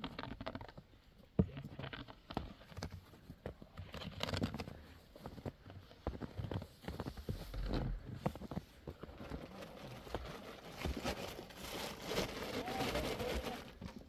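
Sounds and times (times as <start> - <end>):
rustling: 3.8 - 14.0.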